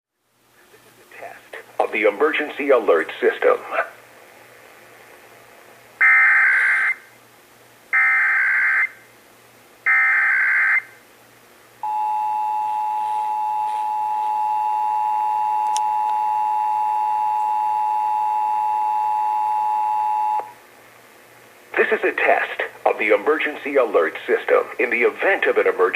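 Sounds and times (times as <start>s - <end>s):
two-tone attention signal: 11.8s - 20.5s.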